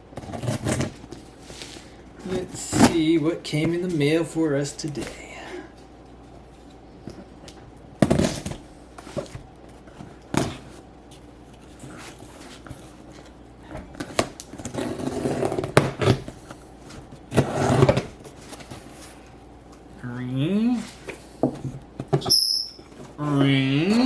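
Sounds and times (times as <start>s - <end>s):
cardboard box being unpacked: 0.2s - 3.0s.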